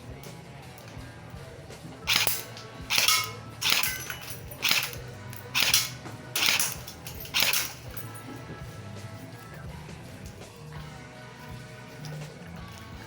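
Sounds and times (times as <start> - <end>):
airsoft pistol shots: 2.1 - 7.8.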